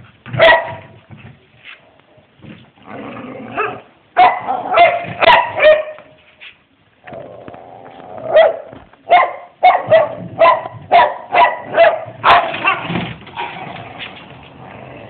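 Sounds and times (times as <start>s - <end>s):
dog barking: 0.4s - 0.9s, 3.6s - 6.1s, 8.3s - 12.9s.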